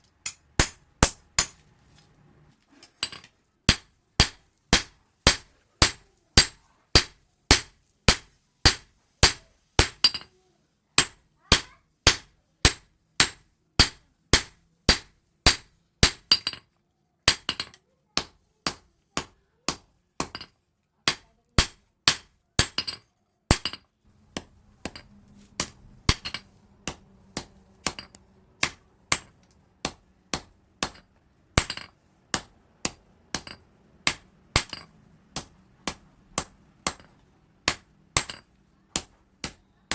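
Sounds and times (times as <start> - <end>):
hammer striking steel on anvil: 0.2 - 1.6, 3.0 - 10.3, 11.0 - 16.6, 21.1 - 23.8, 24.4 - 39.9.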